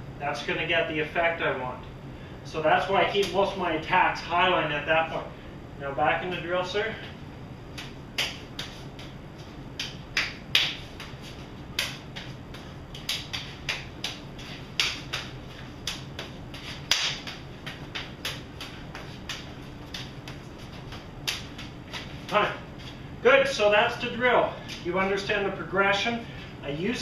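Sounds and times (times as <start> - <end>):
hands and forearms slapping: 7.7 - 23.0.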